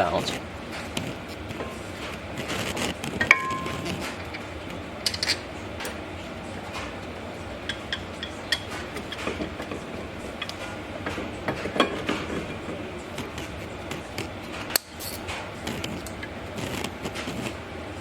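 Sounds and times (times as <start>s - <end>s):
metal bolts and tools clinking: 5.0s - 6.0s.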